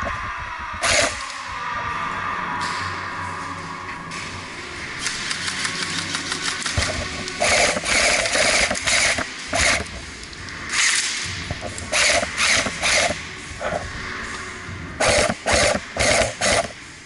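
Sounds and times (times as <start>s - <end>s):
low hum with fast clicking: 2.6s - 16.8s
airsoft gun rattling bursts: 5.0s - 10.0s, 10.7s - 13.2s, 15.0s - 16.8s.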